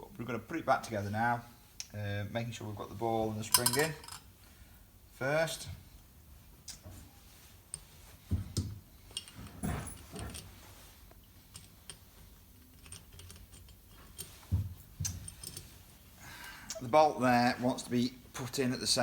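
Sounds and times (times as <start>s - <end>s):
small metal parts clinking: 3.5s - 4.3s, 9.0s - 10.6s, 11.2s - 15.8s.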